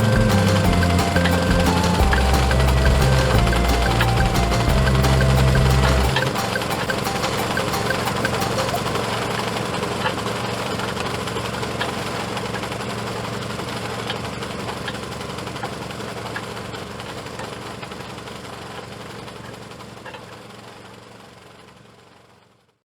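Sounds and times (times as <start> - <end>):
boat engine droning: 0.0 - 11.7.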